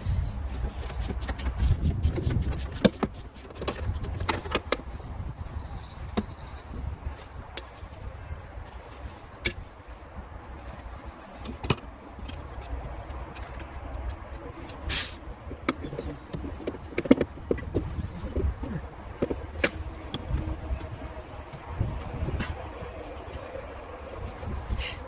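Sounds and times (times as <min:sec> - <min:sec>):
hand tools clinking on metal: 0:11.4 - 0:12.8, 0:19.6 - 0:20.4.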